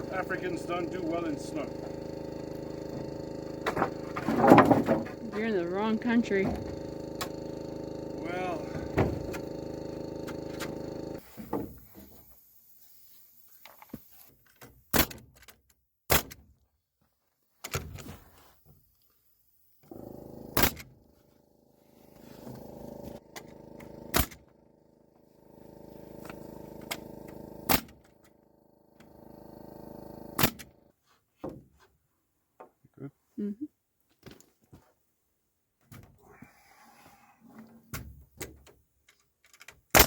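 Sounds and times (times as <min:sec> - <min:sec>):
motor humming: 0:00.0 - 0:12.4, 0:19.8 - 0:30.9
nail gun shots: 0:14.9 - 0:15.4, 0:16.1 - 0:16.5, 0:20.6 - 0:20.9, 0:24.1 - 0:24.4, 0:27.7 - 0:28.1, 0:30.4 - 0:30.7.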